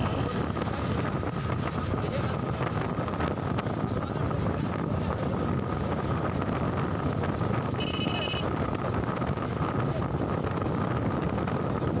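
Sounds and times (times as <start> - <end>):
wind buffeting microphone: 0.0 - 7.8, 8.4 - 12.0
road and engine noise: 0.0 - 12.0
short high-pitched beep: 7.8 - 8.5.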